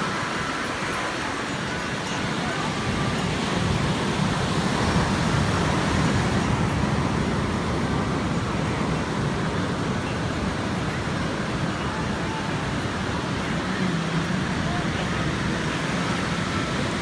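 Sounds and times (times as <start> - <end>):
ocean surf washing in: 0.0 - 17.0.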